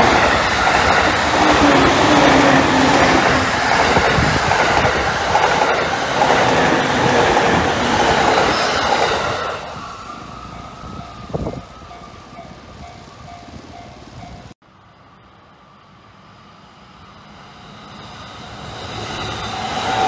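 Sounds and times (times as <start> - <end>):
electric train passing: 0.0 - 20.0.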